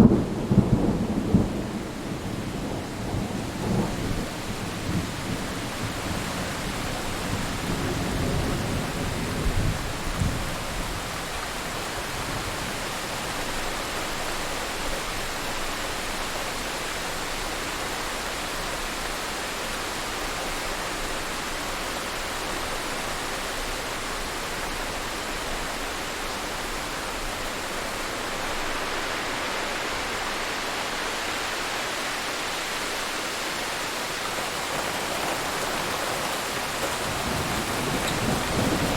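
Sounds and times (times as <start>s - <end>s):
heavy rain: 0.0s - 38.9s
thunder rumbling: 33.8s - 38.9s.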